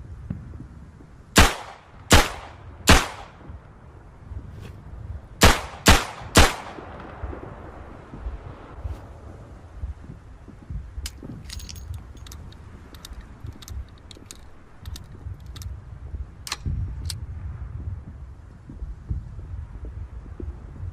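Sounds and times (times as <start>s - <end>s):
low rumble: 0.0s - 20.9s
revolver clicking and rattling: 11.1s - 15.7s.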